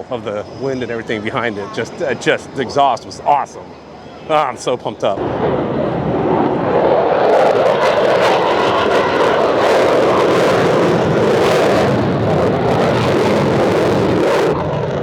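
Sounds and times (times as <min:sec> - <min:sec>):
jet engines running: 0:00.0 - 0:15.0.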